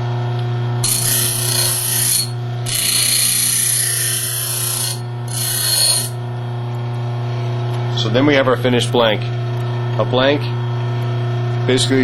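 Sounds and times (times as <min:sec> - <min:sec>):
bench grinder motor hum: 0:00.8 - 0:09.9.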